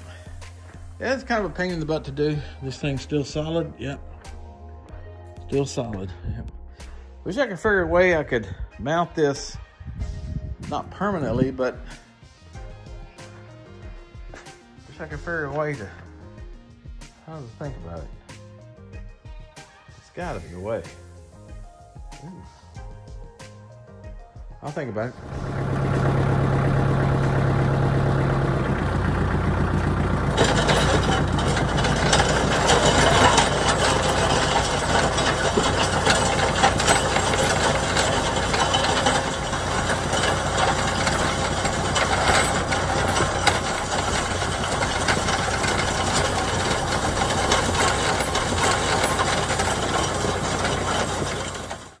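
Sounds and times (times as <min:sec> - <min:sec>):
tractor engine running: 0:25.0 - 0:52.0.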